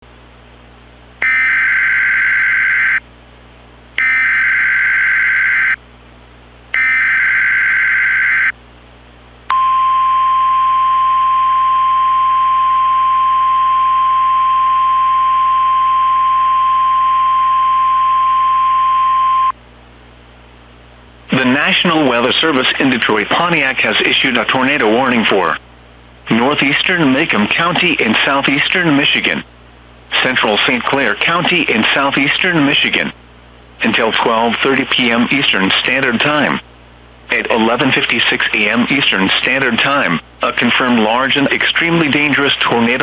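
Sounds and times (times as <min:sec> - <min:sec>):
screeching data tone bursts: 0:01.2 - 0:03.0, 0:06.8 - 0:08.5, 0:09.6 - 0:19.5
steady single-pitch alarm tone: 0:01.2 - 0:03.0, 0:04.0 - 0:05.8, 0:06.7 - 0:08.6, 0:09.5 - 0:19.6.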